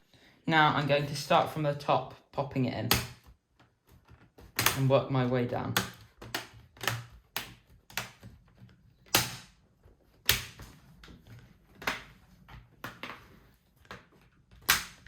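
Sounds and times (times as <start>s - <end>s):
plastic clips snapping into place: 4.5s - 4.8s, 5.7s - 8.4s, 9.0s - 9.6s, 10.2s - 11.2s, 13.8s - 15.0s.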